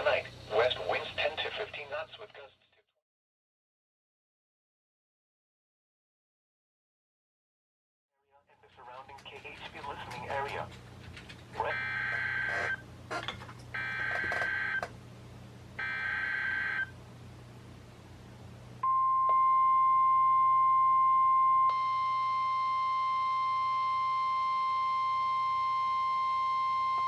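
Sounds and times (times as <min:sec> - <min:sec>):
steady warning alarm tone: 0:11.6 - 0:12.8, 0:13.8 - 0:14.9, 0:15.8 - 0:16.9, 0:18.8 - 0:27.0.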